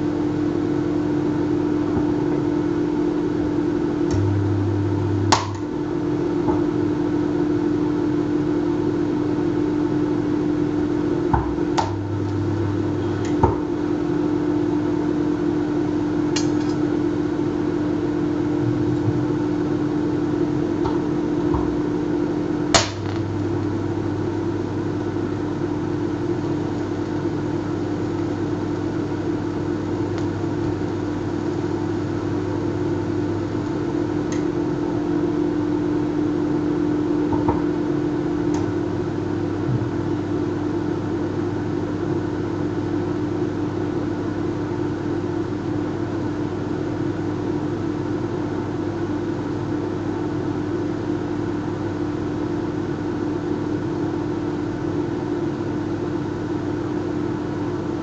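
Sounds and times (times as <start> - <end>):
transformer humming: 1.7 - 7.7, 11.2 - 15.0, 16.3 - 25.4.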